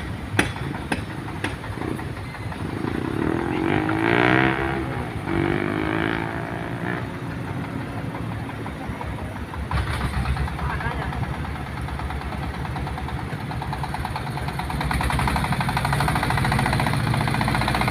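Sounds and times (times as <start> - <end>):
motor engine revving: 1.9 - 7.5, 14.8 - 17.9.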